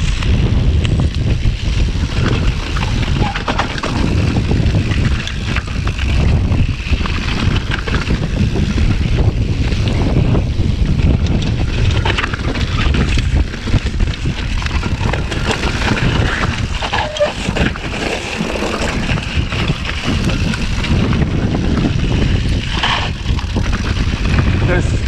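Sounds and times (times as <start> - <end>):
bike rattle: 0.0 - 25.0
wind buffeting microphone: 0.0 - 25.0.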